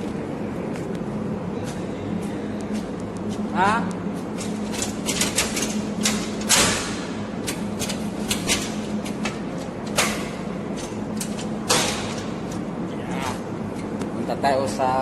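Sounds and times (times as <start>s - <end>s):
clicks and knocks: 4.4s - 12.6s.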